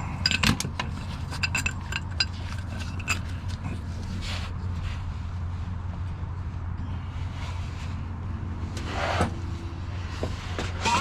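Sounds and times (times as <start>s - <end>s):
metal tools clinking: 0.0s - 3.8s
steady low hum: 0.0s - 11.0s
metal scrape: 8.6s - 11.0s.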